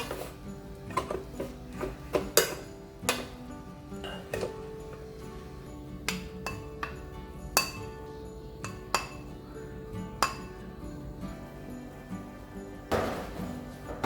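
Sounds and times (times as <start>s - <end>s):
background music with held notes: 0.0s - 14.0s
tableware clinking: 0.0s - 14.0s.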